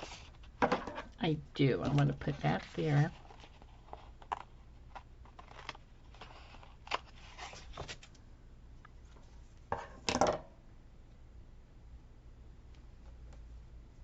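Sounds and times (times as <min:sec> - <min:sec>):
paper rustling: 0:01.7 - 0:08.2.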